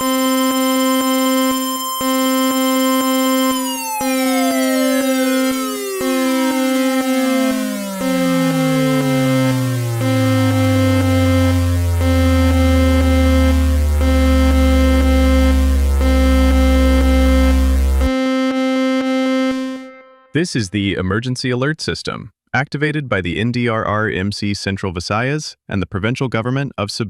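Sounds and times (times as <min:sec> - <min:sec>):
pitched alert tone beeping: 0:00.0 - 0:18.5
descending tone into deep drone: 0:03.2 - 0:18.2.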